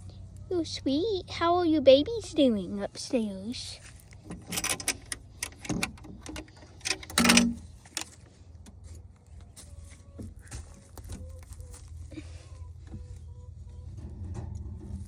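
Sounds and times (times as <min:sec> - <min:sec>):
wire hutch door rattling: 0:04.2 - 0:08.1.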